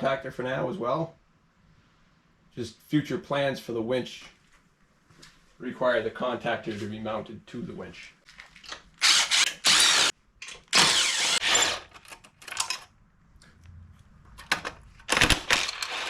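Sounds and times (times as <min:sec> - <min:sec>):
power tool on bolts: 0:09.0 - 0:12.0, 0:15.1 - 0:16.0.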